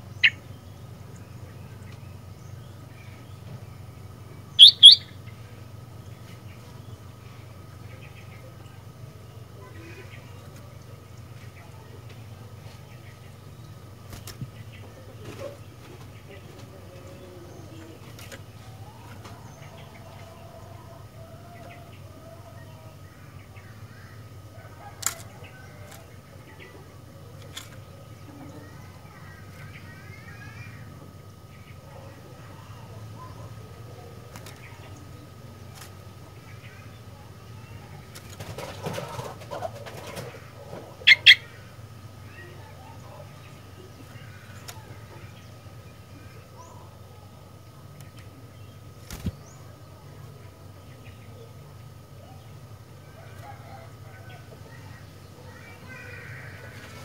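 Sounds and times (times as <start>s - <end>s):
bird chirping and warbling: 0.0s - 3.3s, 4.4s - 5.3s, 41.0s - 46.9s
steady low hum: 0.0s - 57.0s.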